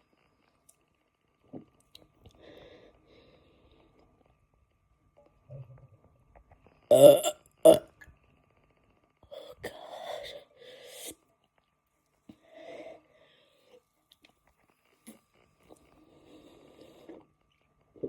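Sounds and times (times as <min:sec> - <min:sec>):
person burping: 0:06.9 - 0:08.0.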